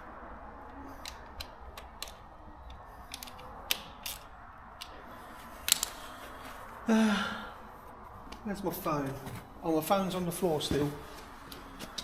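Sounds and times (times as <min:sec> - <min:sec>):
tools and metal parts clicking: 0:01.0 - 0:05.0.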